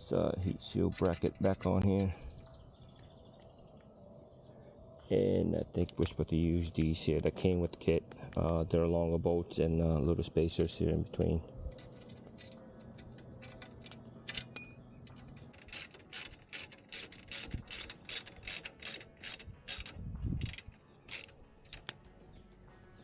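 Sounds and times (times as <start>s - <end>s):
ratchet wrench clicking: 11.7s - 22.5s.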